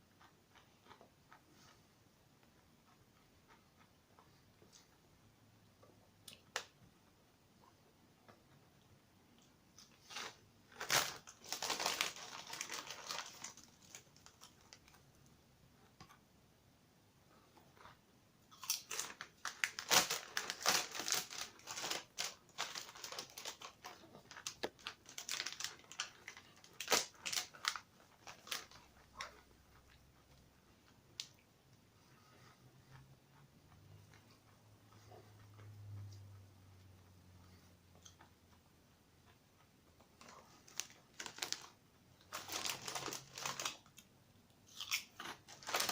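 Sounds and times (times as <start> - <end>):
crisps crunched and chewed: 9.4 - 15.0, 17.8 - 30.0, 44.7 - 45.9
crisp packet crinkling: 9.8 - 15.0, 18.6 - 29.9, 40.2 - 44.1, 44.8 - 45.9.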